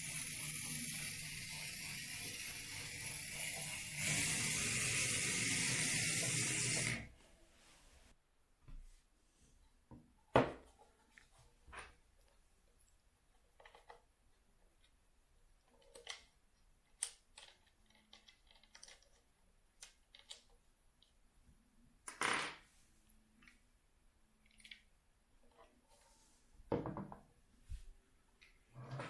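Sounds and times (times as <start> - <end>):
plastic parts clicking: 15.8 - 20.6.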